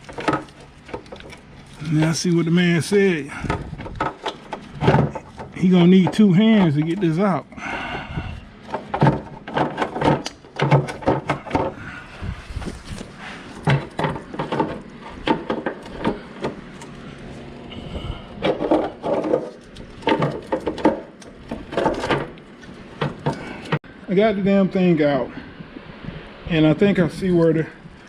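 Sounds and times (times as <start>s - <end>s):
metal parts knocking and clattering: 8.7s - 11.8s, 13.6s - 16.6s, 18.4s - 22.4s.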